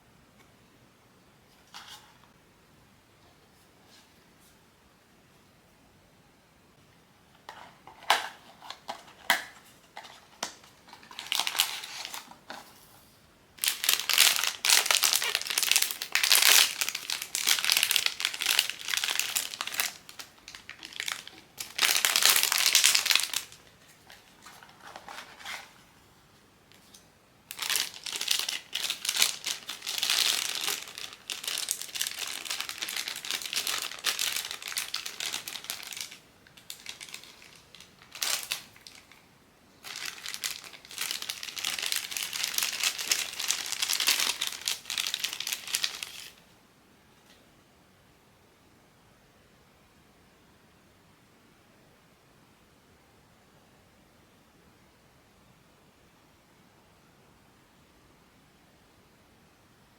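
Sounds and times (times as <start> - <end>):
packaging crinkling and rustling: 7.6 - 12.7, 13.6 - 25.9, 26.7 - 46.4.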